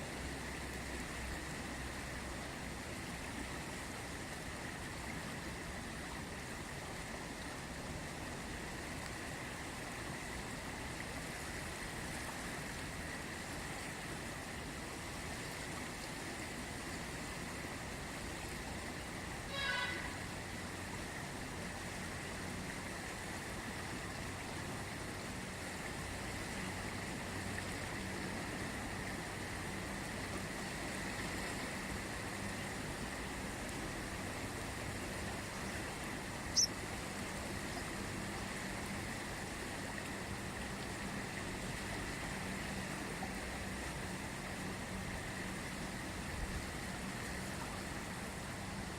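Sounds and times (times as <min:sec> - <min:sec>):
faint steady hum: 0:00.0 - 0:48.9
river water rushing: 0:00.0 - 0:48.9
high chirp: 0:36.5 - 0:36.7.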